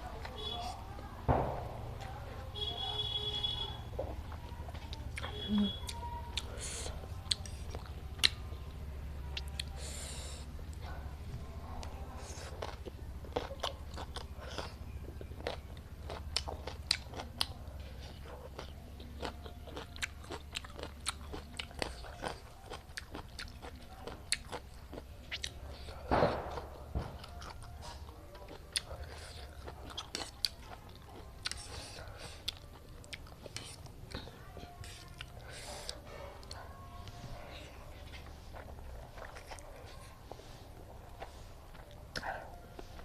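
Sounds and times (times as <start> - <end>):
chewing and crunching: 2.0 - 43.0
mouth clicks: 5.1 - 8.4.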